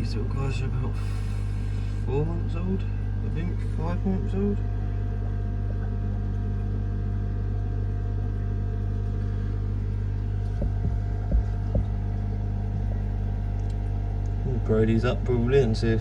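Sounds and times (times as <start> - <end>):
low electrical hum of pumps: 0.0 - 16.0
dull low bumps: 9.3 - 13.7.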